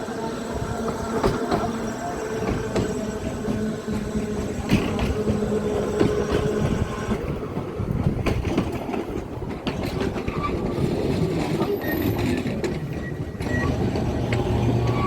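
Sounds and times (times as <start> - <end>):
tram motor hum: 0.0 - 15.0
wheels clicking on rails: 0.6 - 15.0.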